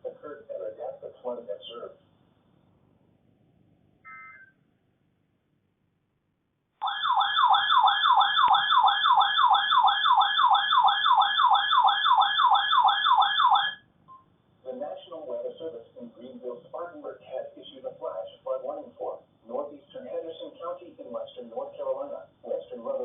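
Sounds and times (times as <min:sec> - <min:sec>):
warbling alert siren: 0:06.8 - 0:13.8.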